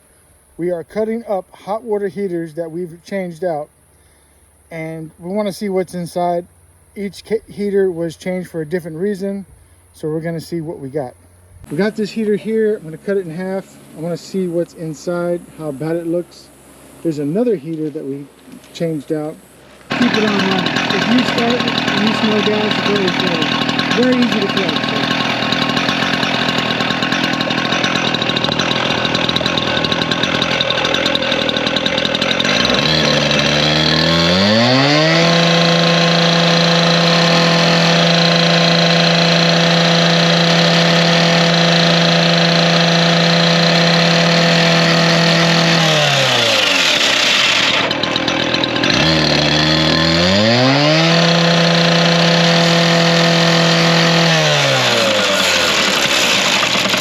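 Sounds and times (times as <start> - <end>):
abrasive blade cutting steel: 19.9 - 57.0
cut-off saw engine revving: 19.9 - 57.0.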